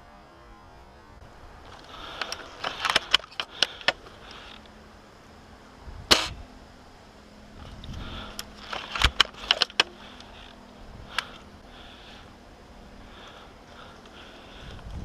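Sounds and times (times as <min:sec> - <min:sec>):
airsoft rifle shot: 0:06.1 - 0:06.4
sharp clicks and snaps: 0:07.8 - 0:10.3.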